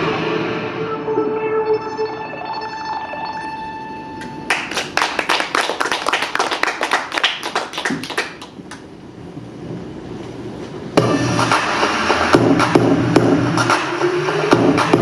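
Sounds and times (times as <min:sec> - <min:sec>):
held synth note: 0:00.0 - 0:04.5
audience applause: 0:04.5 - 0:08.8.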